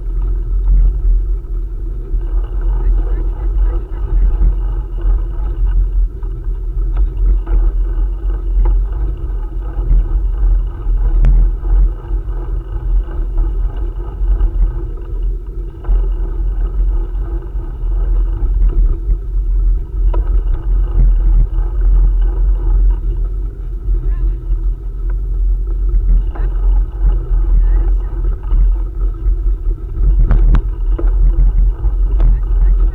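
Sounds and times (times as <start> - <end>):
faint clicks and knocks: 0.0 - 32.9
wind buffeting microphone: 0.0 - 32.9.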